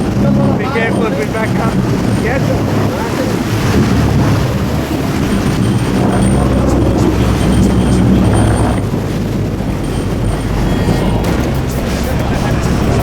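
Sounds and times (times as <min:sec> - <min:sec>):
boat engines running: 0:00.0 - 0:13.0
deep rumble: 0:00.0 - 0:13.0
water splashing: 0:00.0 - 0:13.0
wind: 0:00.0 - 0:13.0.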